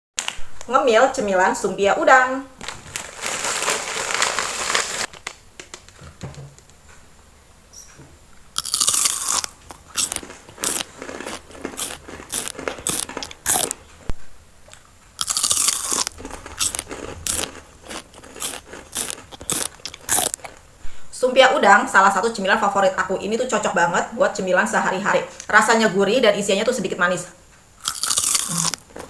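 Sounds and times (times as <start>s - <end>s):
crackle of biting fried wrapper: 8.6s - 13.8s, 15.2s - 20.7s, 27.8s - 29.0s
crunchy chewing: 8.6s - 20.7s, 27.8s - 29.0s.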